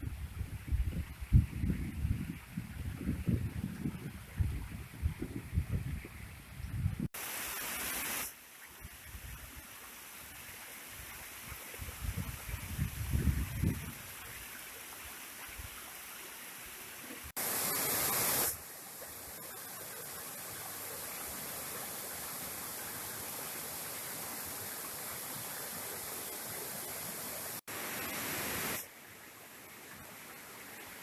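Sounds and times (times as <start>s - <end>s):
waterfall rushing: 17.2s - 28.9s.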